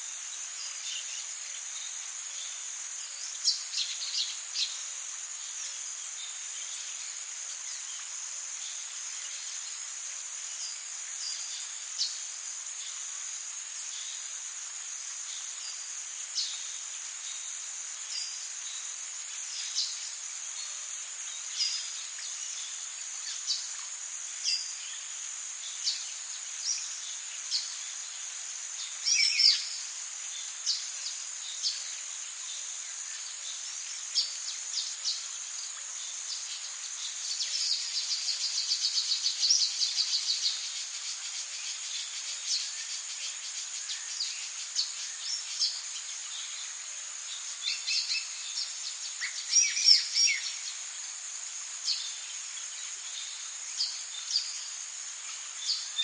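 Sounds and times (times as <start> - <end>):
high-pitched insect drone: 14.8 - 56.0.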